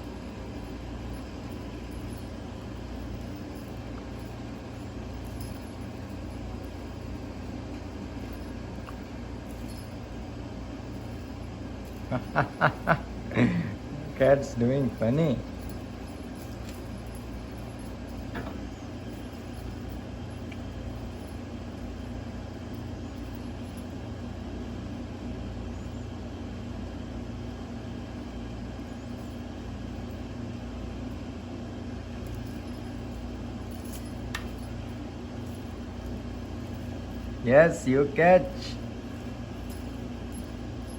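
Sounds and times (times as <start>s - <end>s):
low mechanical hum: 0.0s - 40.9s.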